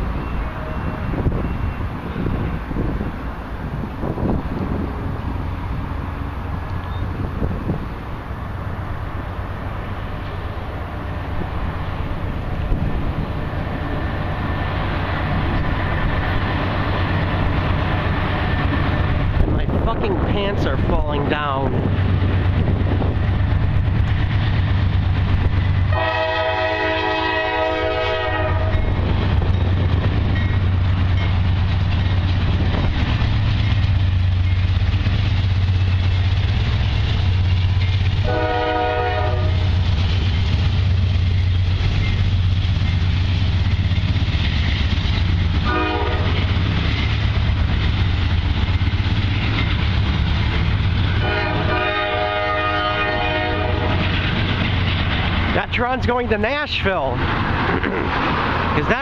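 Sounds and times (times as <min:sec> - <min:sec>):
diesel locomotive rumble: 0:00.0 - 0:59.0
train air horn: 0:25.9 - 0:28.9, 0:38.2 - 0:39.7, 0:45.6 - 0:46.4, 0:51.2 - 0:54.0.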